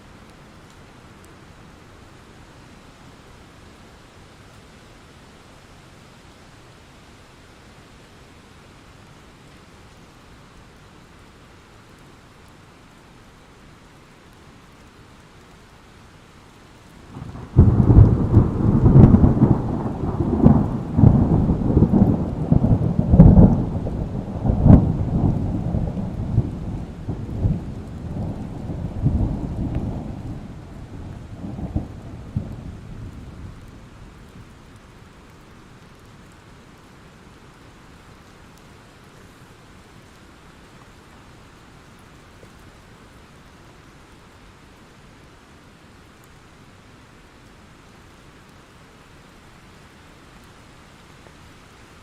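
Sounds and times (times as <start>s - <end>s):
steady rain hissing: 0.0s - 52.0s
thunderclap rumbling: 17.1s - 33.9s.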